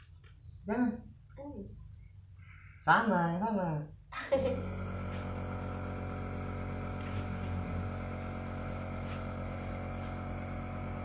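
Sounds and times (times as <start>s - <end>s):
compressor motor humming: 4.4s - 11.0s.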